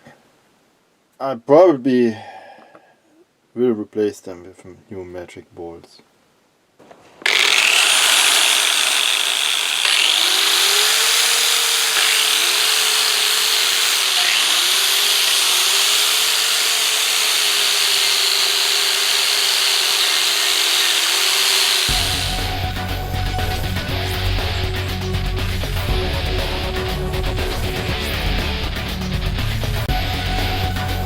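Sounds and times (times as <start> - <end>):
wire wheel scrubbing metal: 7.2 - 22.4.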